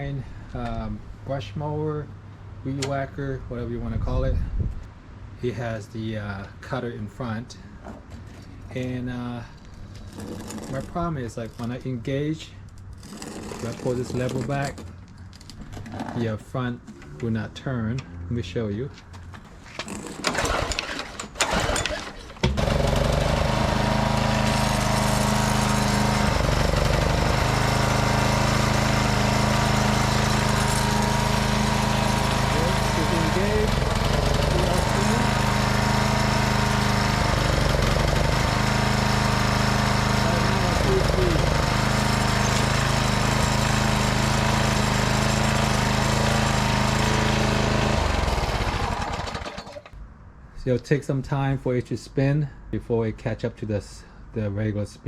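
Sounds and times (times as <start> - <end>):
small engine cranking and running: 9.8 - 11.8, 12.7 - 16.1, 19.8 - 50.0.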